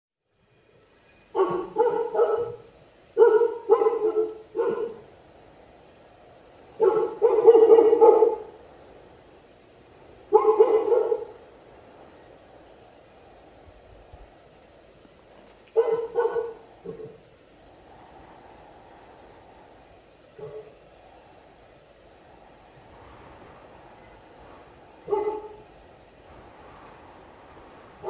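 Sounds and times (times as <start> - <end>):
dog barking: 1.3 - 5.0, 6.8 - 8.5, 10.3 - 11.3, 15.7 - 17.2, 20.4 - 20.7, 25.0 - 25.6.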